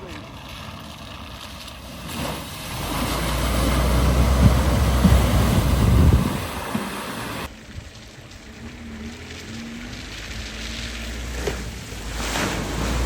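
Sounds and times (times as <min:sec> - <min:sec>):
engine rumble: 0:00.0 - 0:13.0
water washing: 0:00.0 - 0:13.0
wind buffeting microphone: 0:02.7 - 0:07.9.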